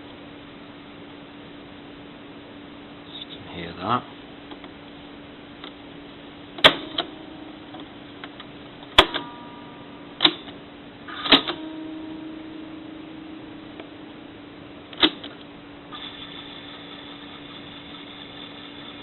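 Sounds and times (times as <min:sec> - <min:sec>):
tape mechanism humming: 0:05.5 - 0:19.0
tape transport whirr: 0:06.5 - 0:19.0.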